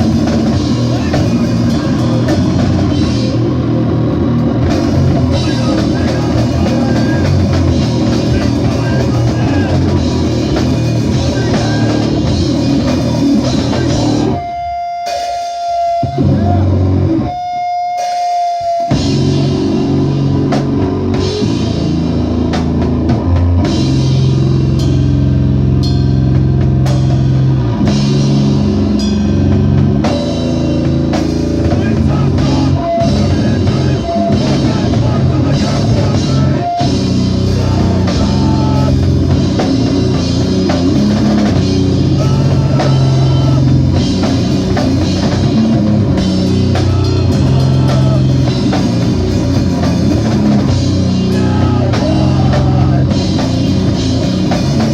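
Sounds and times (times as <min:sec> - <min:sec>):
live rock band playing: 0:00.0 - 0:54.9
held high note: 0:14.2 - 0:19.0.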